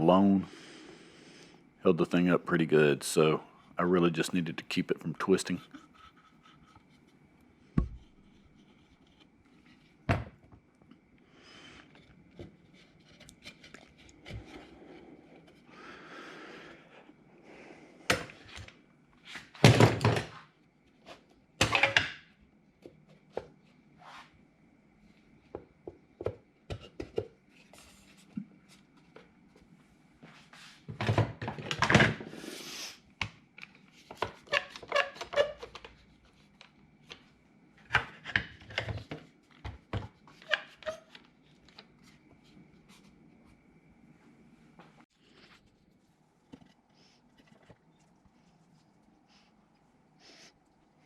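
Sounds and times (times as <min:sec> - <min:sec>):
plywood parts knocking and scraping: 0:05.2 - 0:10.6.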